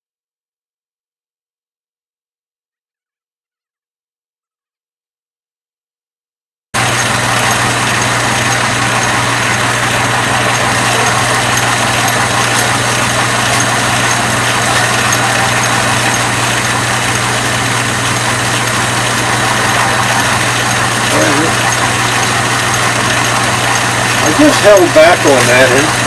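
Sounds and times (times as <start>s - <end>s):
metal lathe running: 6.8s - 26.0s.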